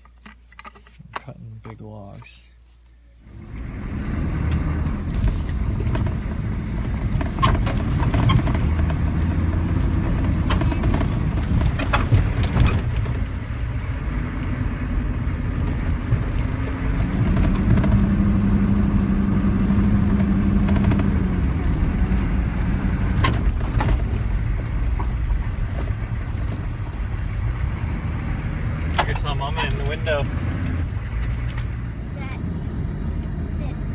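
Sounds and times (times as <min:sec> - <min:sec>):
vehicle engine rumble: 0:00.0 - 0:33.9
knocks and rattles: 0:05.1 - 0:13.9, 0:15.1 - 0:31.8.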